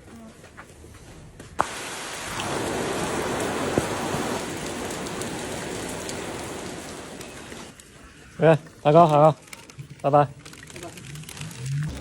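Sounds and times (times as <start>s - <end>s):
heavy rain pouring: 1.6s - 7.8s.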